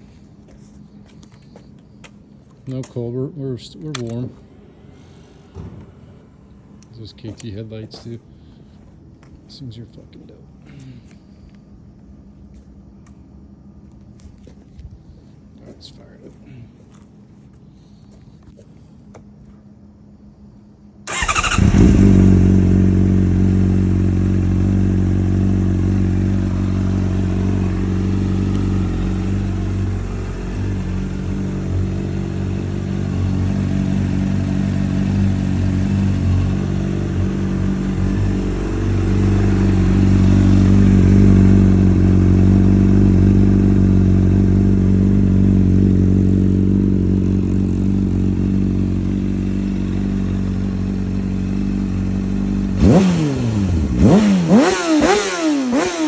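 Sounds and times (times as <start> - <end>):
motorcycle engine idling: 21.1 - 56.0.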